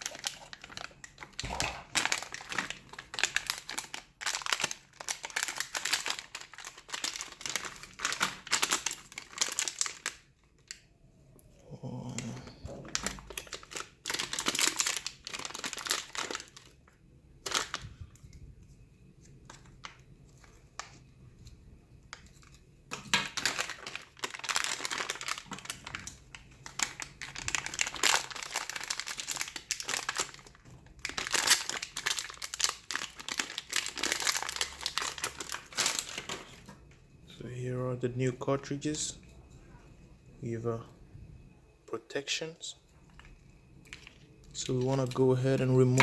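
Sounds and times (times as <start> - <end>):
packaging being torn and crinkled: 0.0 - 10.8, 12.8 - 16.8, 17.4 - 18.3, 22.1 - 36.6.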